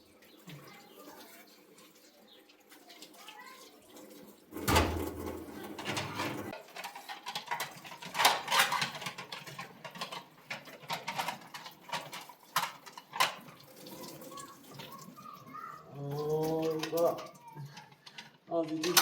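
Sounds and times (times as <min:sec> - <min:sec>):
objects knocking and clattering: 0:04.5 - 0:19.0.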